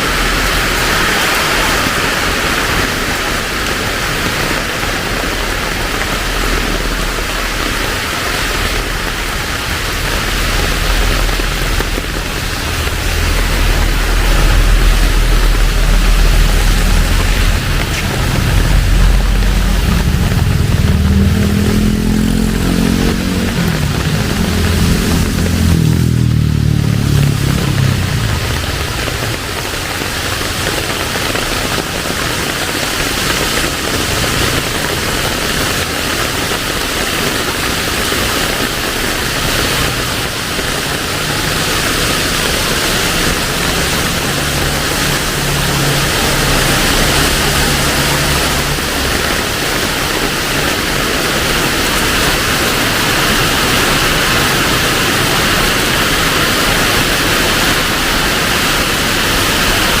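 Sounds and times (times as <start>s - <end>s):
heavy rain falling: 0.0s - 60.0s
low steady hum: 8.6s - 22.6s.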